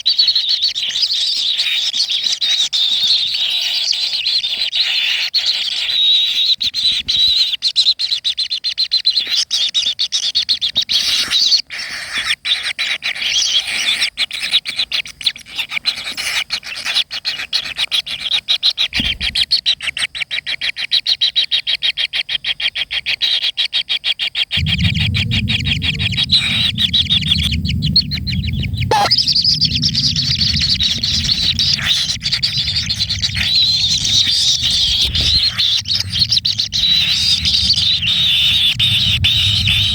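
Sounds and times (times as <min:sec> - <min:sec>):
birds chirping and trilling: 0:24.6 - 0:39.9
steady low rumble: 0:24.6 - 0:39.9.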